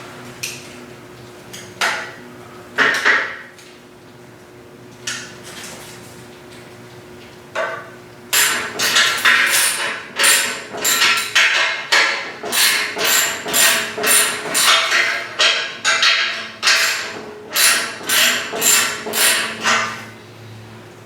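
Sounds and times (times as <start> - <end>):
hammer striking metal: 8.4 - 19.9.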